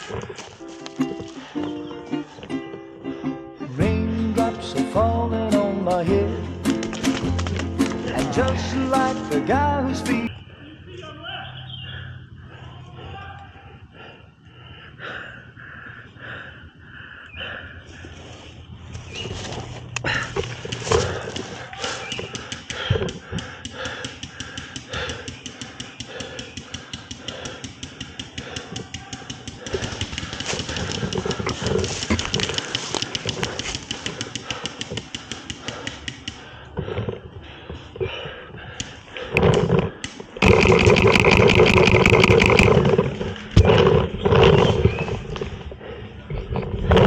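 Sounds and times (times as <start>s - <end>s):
person breathing hard: 1.2s - 3.6s, 11.8s - 18.7s, 20.0s - 43.6s, 45.4s - 46.5s.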